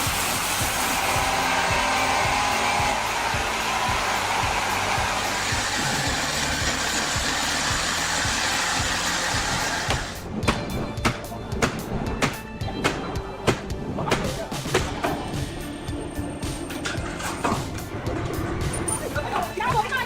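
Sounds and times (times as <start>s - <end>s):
machine rushing noise: 0.0s - 10.3s.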